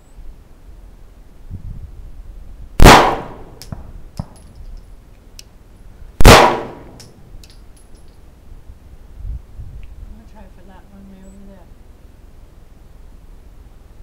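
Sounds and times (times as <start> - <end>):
handgun shots with echo: 2.8 - 4.4, 6.2 - 7.1.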